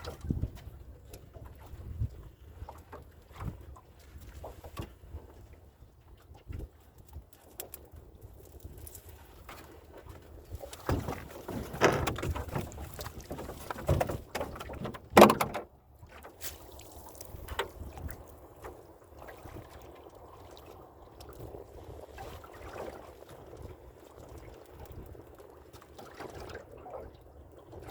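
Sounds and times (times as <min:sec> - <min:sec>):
knocks on a boat: 0:10.8 - 0:15.8.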